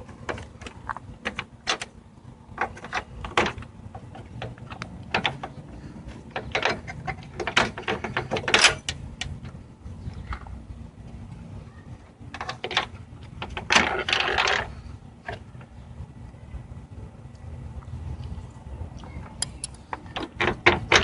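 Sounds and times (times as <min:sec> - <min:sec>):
plastic parts clicking and rattling: 0:12.3 - 0:15.4.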